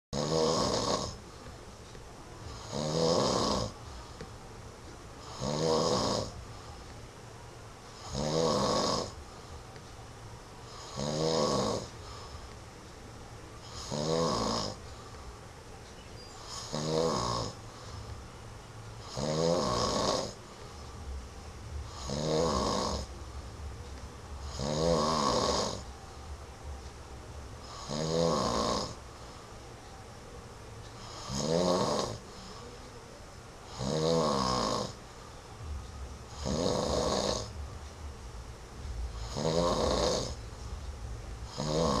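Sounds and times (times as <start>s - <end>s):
man snoring: 0.2s - 1.2s, 2.5s - 4.2s, 5.2s - 6.4s, 8.0s - 9.2s, 10.7s - 12.3s, 13.6s - 14.8s, 16.4s - 17.6s, 19.0s - 20.4s, 21.9s - 23.1s, 24.4s - 25.8s, 27.6s - 29.0s, 31.0s - 32.2s, 33.7s - 35.0s, 36.3s - 37.5s, 39.2s - 40.4s, 41.5s - 42.0s.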